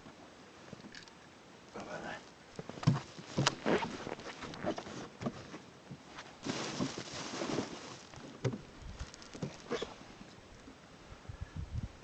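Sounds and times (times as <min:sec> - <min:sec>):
rustling scrape: 0:02.6 - 0:08.4, 0:09.0 - 0:10.2.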